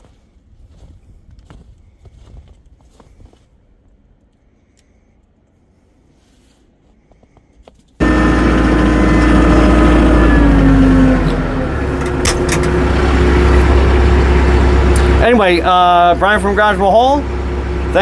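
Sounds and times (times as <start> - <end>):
tractor engine running: 8.0 - 18.0.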